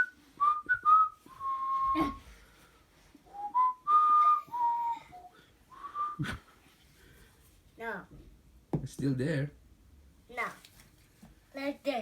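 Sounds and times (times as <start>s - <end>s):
person whistling a tune: 0.0s - 2.2s, 3.3s - 6.4s.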